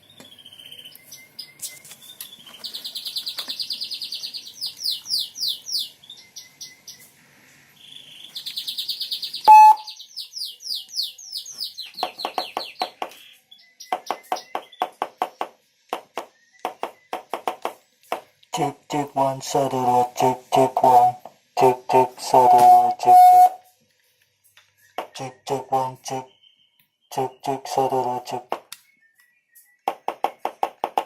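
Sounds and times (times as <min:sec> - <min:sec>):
short loud siren tone: 0:09.5 - 0:09.9
electronic siren warbling and chirping: 0:09.5 - 0:10.0, 0:22.2 - 0:23.6.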